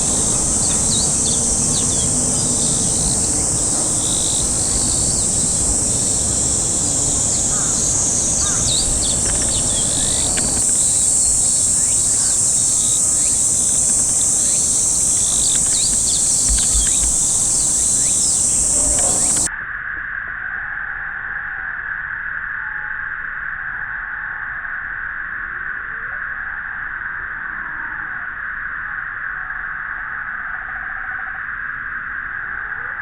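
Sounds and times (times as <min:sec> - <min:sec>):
high-pitched insect chorus: 0:00.0 - 0:19.5
songbirds chirping: 0:00.0 - 0:19.5.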